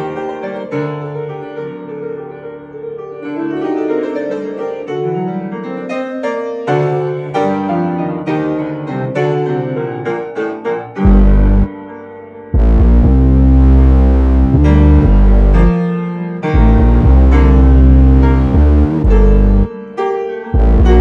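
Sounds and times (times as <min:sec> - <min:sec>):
piano music: 0:00.0 - 0:21.0
loud deep tone: 0:11.1 - 0:11.7, 0:12.6 - 0:15.7, 0:16.6 - 0:19.7, 0:20.6 - 0:21.0.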